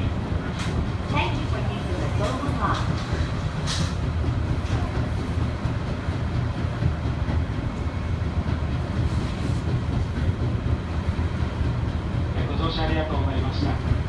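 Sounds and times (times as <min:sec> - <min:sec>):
train wheels rumbling on rails: 0:00.0 - 0:14.0
rail joint ticks: 0:00.5 - 0:09.0.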